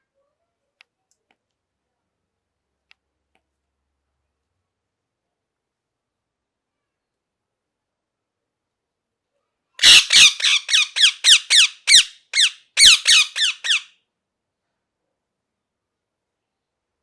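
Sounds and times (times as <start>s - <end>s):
parakeet shrill calls: 9.8s - 13.9s.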